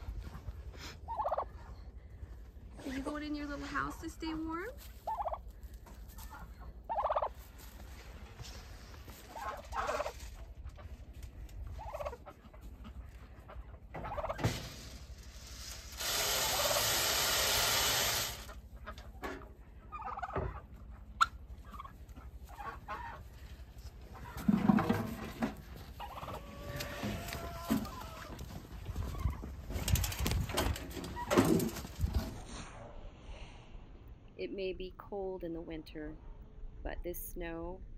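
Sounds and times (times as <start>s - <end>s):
farm fowl calling: 9.2s - 10.4s, 11.7s - 14.4s, 18.4s - 23.5s, 25.8s - 29.5s.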